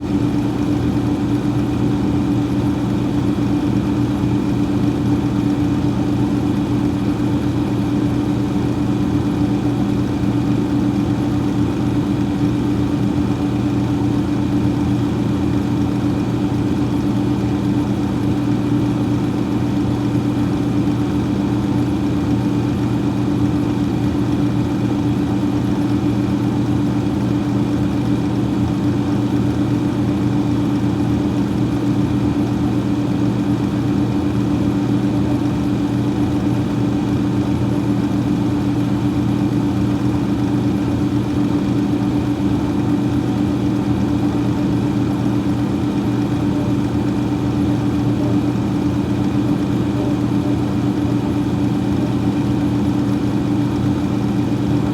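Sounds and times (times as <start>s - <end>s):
freezer fan humming: 0.0s - 54.9s.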